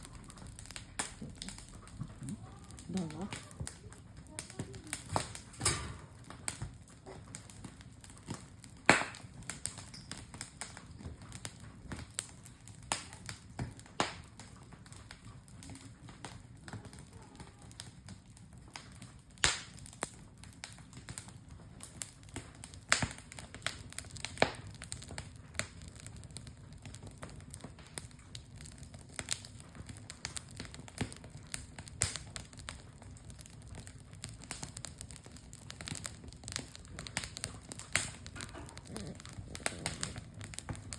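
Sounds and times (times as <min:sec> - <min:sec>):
campfire crackling: 0:00.0 - 0:40.9
sharp pops: 0:08.2 - 0:10.8.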